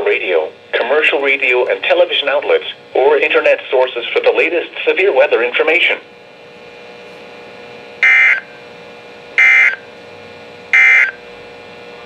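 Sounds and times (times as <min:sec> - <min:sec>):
digital data tone bursts: 0:08.0 - 0:08.5, 0:09.4 - 0:09.8, 0:10.7 - 0:11.2.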